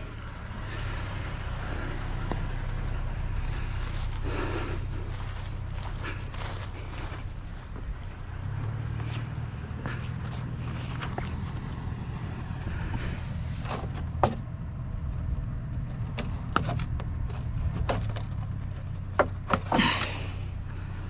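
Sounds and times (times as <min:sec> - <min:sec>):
truck engine idling: 0:00.0 - 0:21.0.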